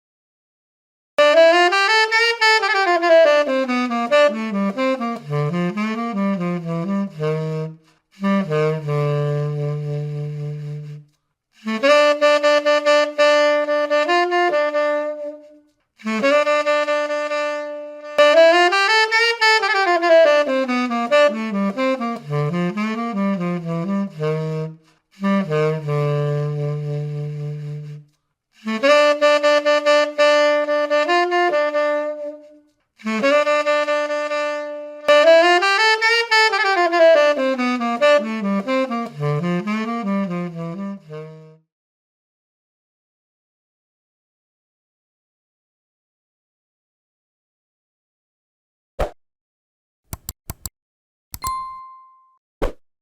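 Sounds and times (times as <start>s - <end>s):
saxophone playing: 1.2s - 41.7s.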